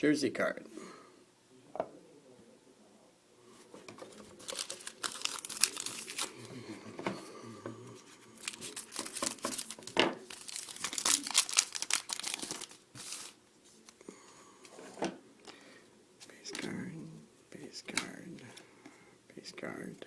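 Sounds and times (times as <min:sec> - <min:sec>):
wrapper crinkling: 0:04.0 - 0:06.5, 0:08.4 - 0:13.4
card pack wrapper tearing: 0:04.1 - 0:06.4, 0:08.4 - 0:13.4.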